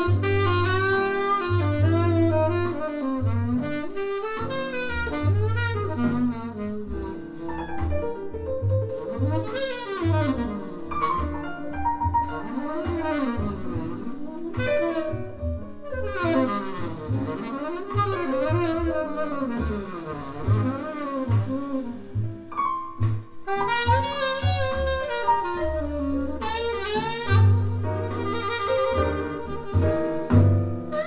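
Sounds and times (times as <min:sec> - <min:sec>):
jazz piano bass and drums: 0:00.0 - 0:31.0
tenor saxophone melody: 0:00.0 - 0:31.0.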